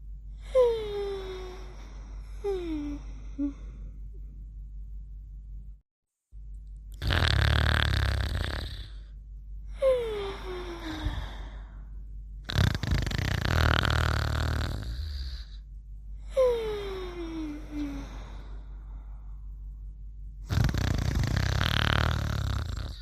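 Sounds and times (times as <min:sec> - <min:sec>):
deep snoring: 0:07.0 - 0:09.1, 0:12.4 - 0:15.6, 0:20.4 - 0:23.0.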